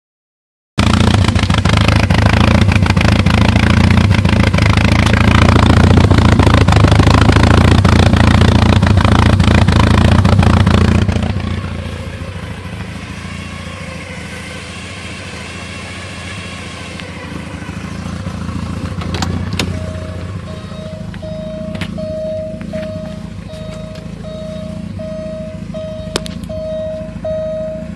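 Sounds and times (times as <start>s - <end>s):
car engine idling roughly: 0.8s - 27.9s
beeping tone: 19.5s - 27.9s.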